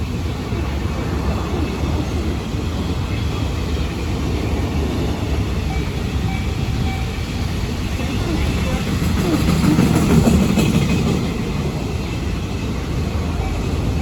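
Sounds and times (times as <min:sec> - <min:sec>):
train rumbling past: 0:00.0 - 0:14.0.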